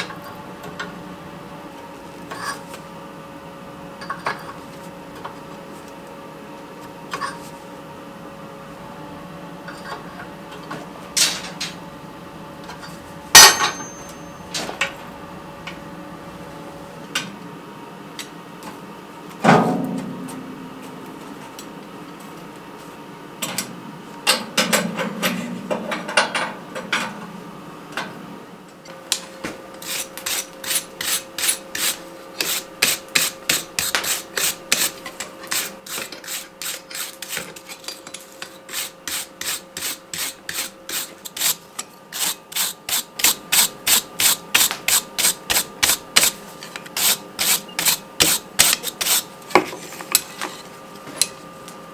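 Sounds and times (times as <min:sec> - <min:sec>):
ringing metal clank: 0:13.3 - 0:14.7
file scraping across steel: 0:29.8 - 0:50.7.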